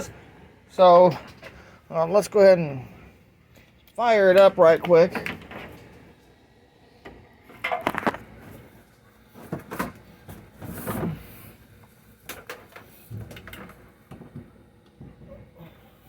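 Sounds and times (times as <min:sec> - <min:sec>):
vacuum cleaner being handled: 0:07.6 - 0:08.6.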